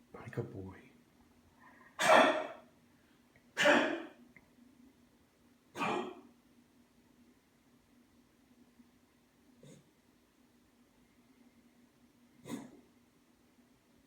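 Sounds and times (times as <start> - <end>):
pet coughing: 2.0 - 2.7, 3.6 - 4.2, 5.7 - 6.3, 12.4 - 12.8.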